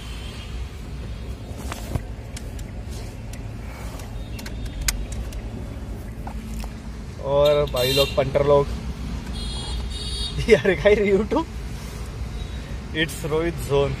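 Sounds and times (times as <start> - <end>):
road noise: 0.0 - 14.0
vehicle engine rumble: 0.0 - 14.0
sharp clicks: 2.2 - 5.5.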